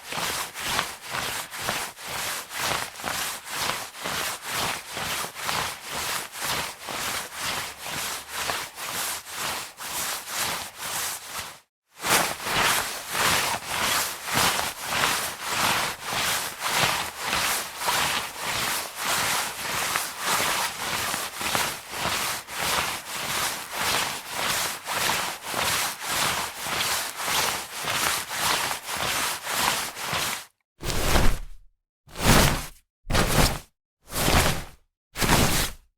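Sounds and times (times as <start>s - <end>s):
jacket fabric rubbing and swishing: 9.2s - 35.9s.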